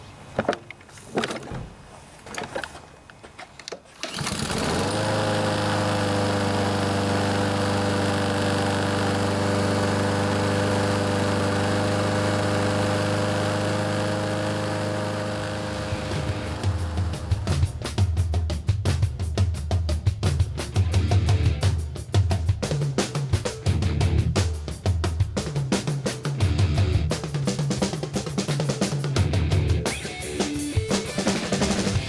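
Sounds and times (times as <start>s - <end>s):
lawnmower engine starting: 0.4s - 17.8s, 29.7s - 32.0s.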